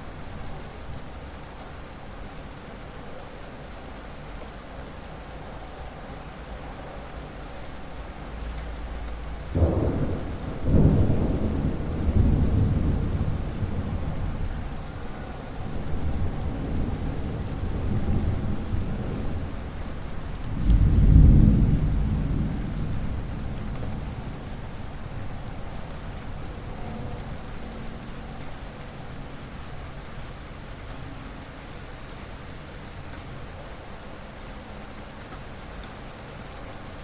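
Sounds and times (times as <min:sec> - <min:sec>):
steady rain: 0:00.0 - 0:37.0
thunder rolling: 0:09.5 - 0:14.8, 0:15.6 - 0:27.3.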